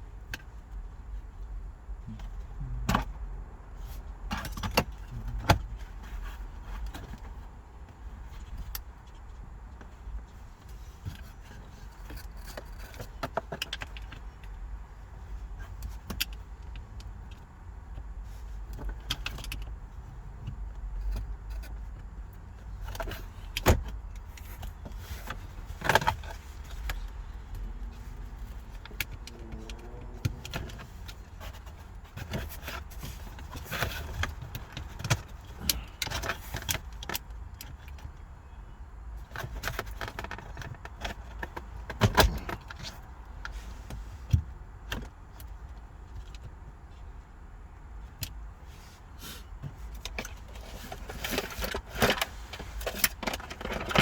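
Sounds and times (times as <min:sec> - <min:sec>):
tools and parts clicking and rattling: 0:03.8 - 0:38.2, 0:39.2 - 0:43.6, 0:49.6 - 0:54.0.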